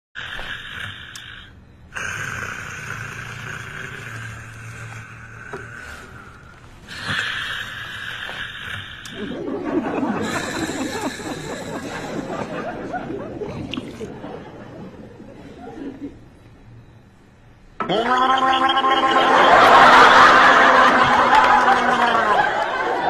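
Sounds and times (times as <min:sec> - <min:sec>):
person snoring: 0:00.2 - 0:12.7
stifled snickering laughter: 0:09.1 - 0:16.3, 0:19.0 - 0:23.0.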